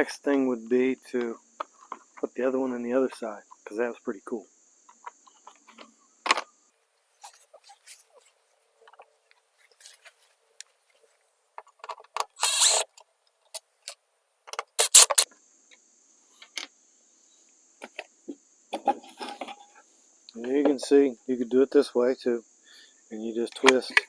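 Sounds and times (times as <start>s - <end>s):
scraping rustle: 7.2s - 8.4s
hands and tools clicking: 12.4s - 12.9s, 14.8s - 15.2s.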